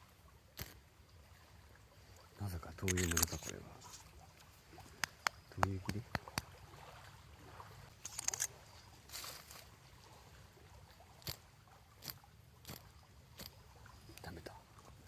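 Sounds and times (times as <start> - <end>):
lighter flint wheel rasping: 8.0 - 8.5.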